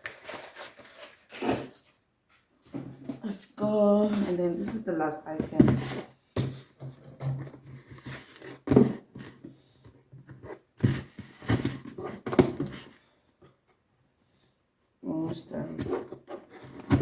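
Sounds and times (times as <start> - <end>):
packaging rustled and torn: 0.0 - 1.9.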